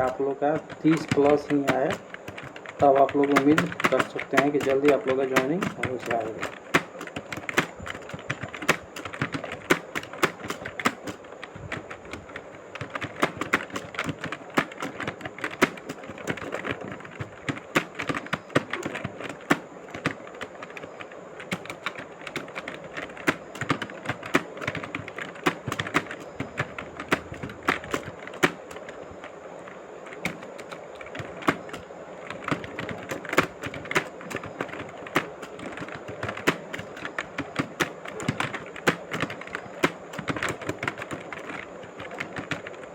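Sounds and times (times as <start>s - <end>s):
fast typing on a keyboard: 0.0s - 42.9s.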